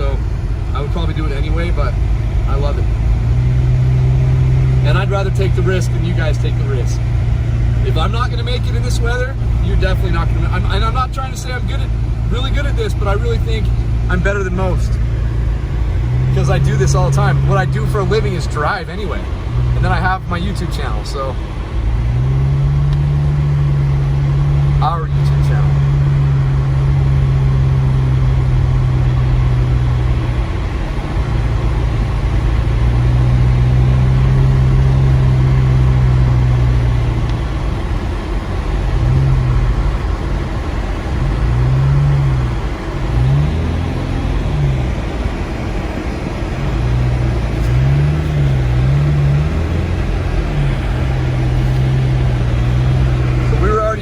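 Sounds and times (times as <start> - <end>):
car engine from inside cabin: 0.0 - 54.0.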